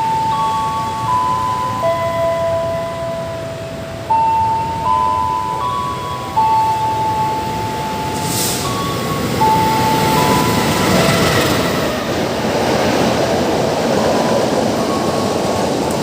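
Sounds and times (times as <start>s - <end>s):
steady tones stepping in pitch: 0.0s - 12.7s
train running noise: 0.0s - 16.0s
short hiss: 8.2s - 8.7s.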